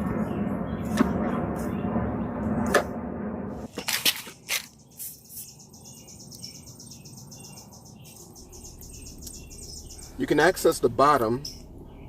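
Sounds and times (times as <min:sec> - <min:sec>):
high-pitched chirping: 0:04.8 - 0:12.0.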